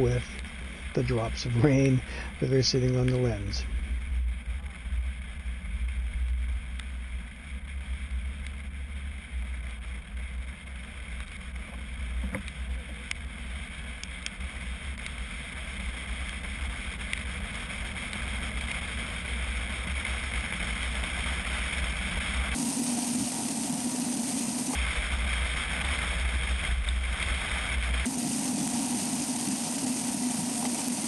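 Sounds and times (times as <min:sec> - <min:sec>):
road hiss: 0:00.0 - 0:03.7, 0:11.8 - 0:31.0.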